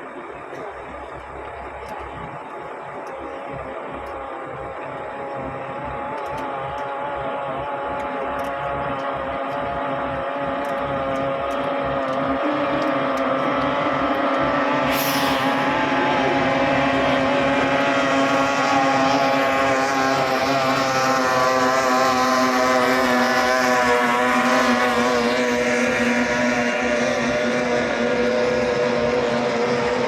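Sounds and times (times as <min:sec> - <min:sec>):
speedboat engine running flat out: 0:00.0 - 0:30.0
brief hiss: 0:14.9 - 0:15.7.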